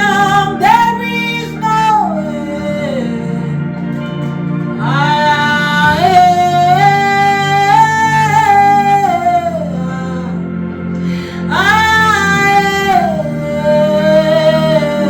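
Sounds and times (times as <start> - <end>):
instrumental backing music: 0.0 - 15.0
person singing long notes: 0.0 - 15.0.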